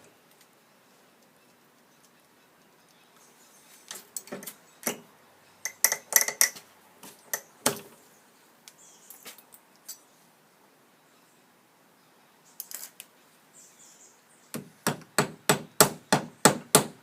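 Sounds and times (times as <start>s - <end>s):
hammer tapping a nail: 14.6s - 17.0s.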